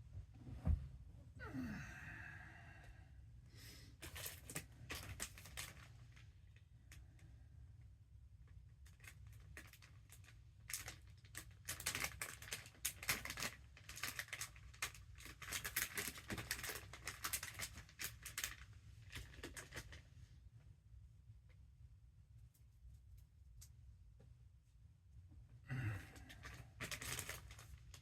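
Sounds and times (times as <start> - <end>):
small clicks and crackles: 4.0 - 7.3, 8.4 - 20.0, 26.1 - 28.0.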